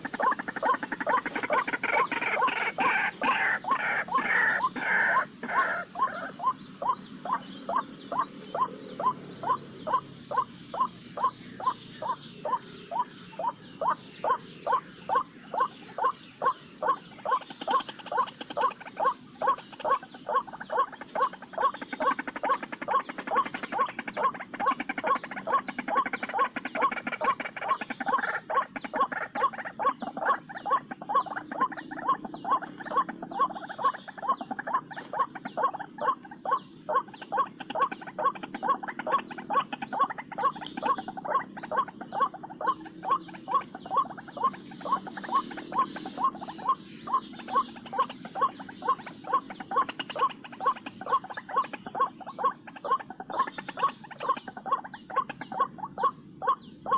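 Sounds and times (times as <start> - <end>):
dense layer of bird calls: 0.0 - 56.9
waterhen calls: 0.0 - 56.9.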